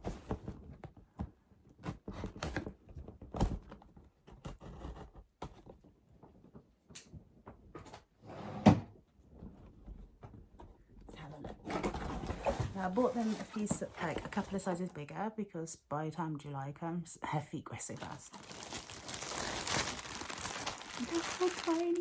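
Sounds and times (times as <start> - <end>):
cardboard packaging handled: 17.9 - 22.0.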